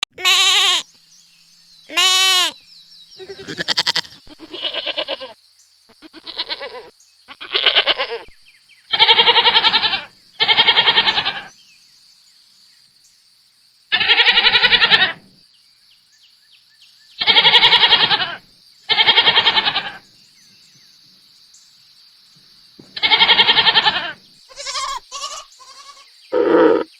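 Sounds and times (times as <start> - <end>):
goat bleating: 0.0 - 0.9, 1.9 - 2.6, 3.2 - 5.4, 6.0 - 8.3, 8.9 - 11.5, 13.9 - 15.2, 17.2 - 20.0, 22.9 - 26.1.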